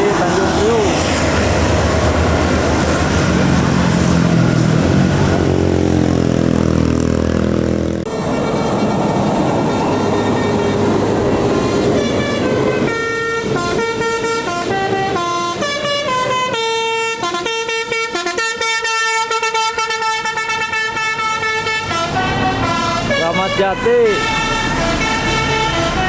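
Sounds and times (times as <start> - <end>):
bus engine and road noise: 0.0 - 26.0
musical bus horn tune: 8.0 - 26.0.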